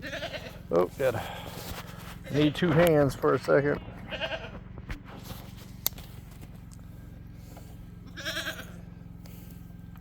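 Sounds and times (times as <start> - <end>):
goat bleating: 0.0 - 1.0, 2.2 - 2.9, 3.8 - 4.8, 8.0 - 9.0
steady low hum: 0.0 - 10.0.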